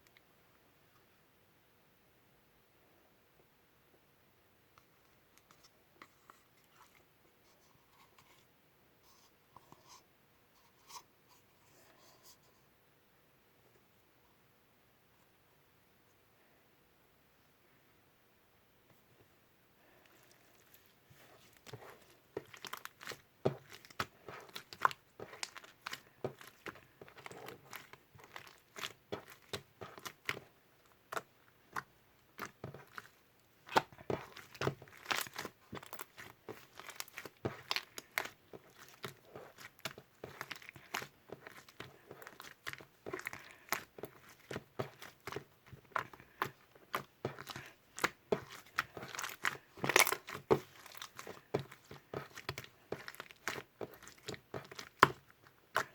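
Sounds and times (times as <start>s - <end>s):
slime crackling and popping: 21.6s - 55.9s.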